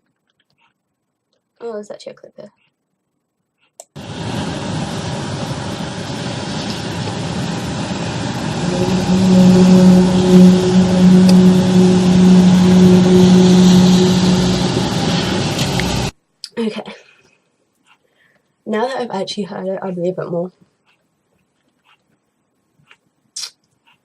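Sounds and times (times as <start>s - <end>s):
noisy rumble: 3.9s - 16.2s
low droning hum: 4.0s - 16.2s.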